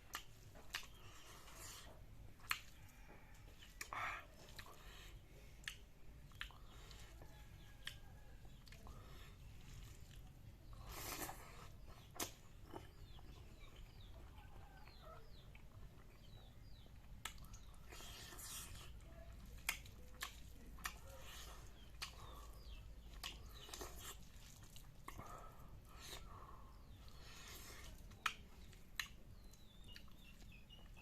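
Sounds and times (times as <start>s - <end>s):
person chewing: 0.0s - 31.0s
lip smacks: 0.1s - 1.0s, 1.7s - 2.8s, 5.6s - 9.0s, 10.9s - 14.0s, 14.8s - 26.3s, 27.8s - 30.9s
faint bird chirps: 0.1s - 24.6s, 25.2s - 31.0s.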